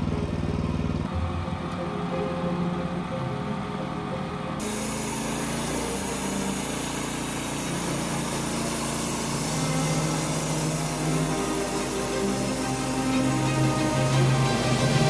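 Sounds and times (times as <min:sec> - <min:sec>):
band sawmill sawing log: 0:04.6 - 0:15.0.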